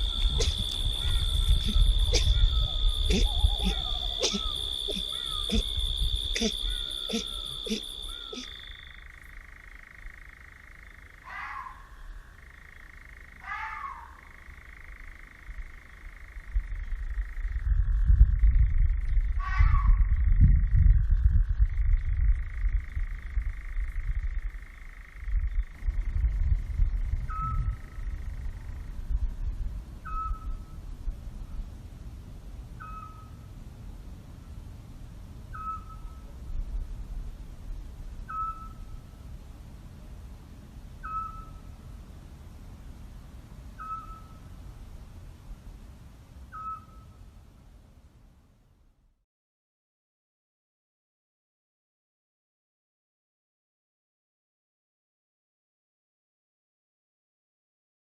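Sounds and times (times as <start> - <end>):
frog calling: 0.0 - 17.6, 22.4 - 25.3, 32.8 - 33.4, 38.3 - 38.9, 41.0 - 41.8, 43.8 - 44.5, 46.5 - 47.2
bird whistled call: 30.0 - 30.7, 32.8 - 33.4, 35.5 - 36.2, 38.3 - 38.9, 41.0 - 41.7, 43.8 - 44.4, 46.5 - 47.2.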